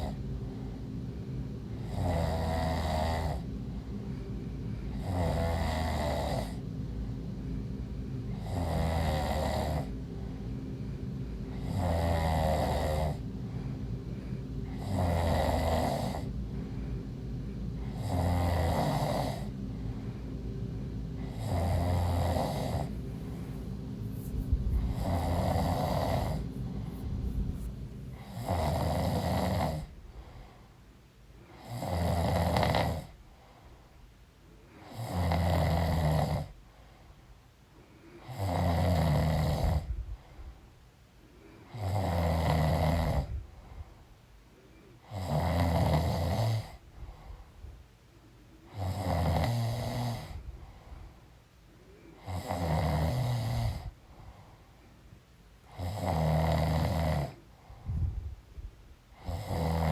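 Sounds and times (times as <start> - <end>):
woman snoring: 0.0 - 0.8, 1.7 - 3.5, 4.9 - 6.6, 8.3 - 10.0, 11.5 - 13.2, 14.6 - 16.4, 17.8 - 19.5, 21.2 - 30.0, 31.5 - 33.2, 34.8 - 36.6, 38.2 - 39.9, 41.7 - 43.4, 45.0 - 46.8, 48.7 - 50.4, 52.2 - 54.0, 55.7 - 57.4, 59.2 - 59.9
steady low hum: 0.0 - 59.9.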